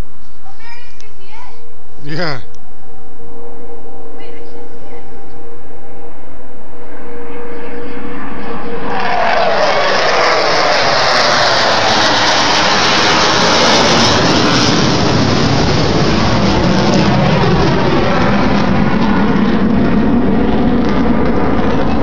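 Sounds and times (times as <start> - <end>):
jet engines passing overhead: 3.3 - 22.0.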